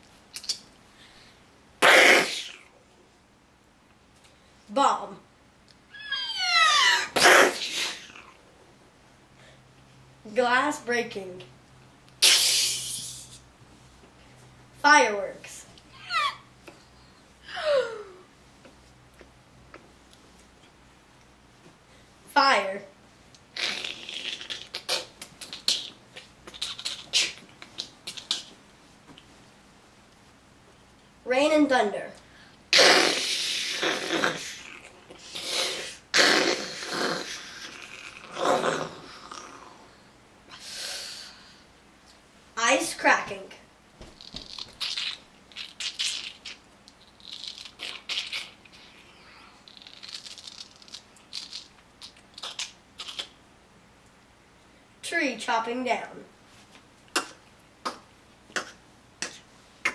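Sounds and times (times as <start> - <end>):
boy imitating crackling fire: 1.8 - 2.7, 5.9 - 8.4, 12.2 - 13.4, 15.9 - 16.5, 17.4 - 18.3, 23.5 - 28.6, 32.7 - 39.9, 44.2 - 53.4, 57.1 - 59.9.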